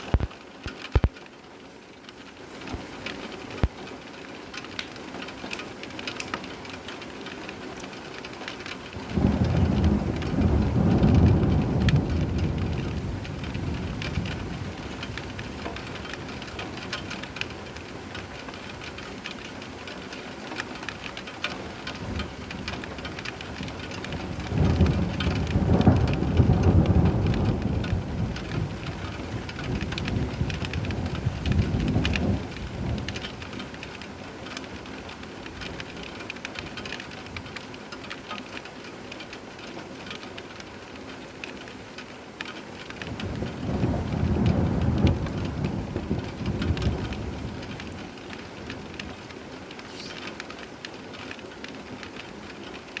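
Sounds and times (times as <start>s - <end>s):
steady rain: 0.0s - 53.0s
thunder rumbling: 8.9s - 19.0s, 21.6s - 36.0s, 43.0s - 50.5s.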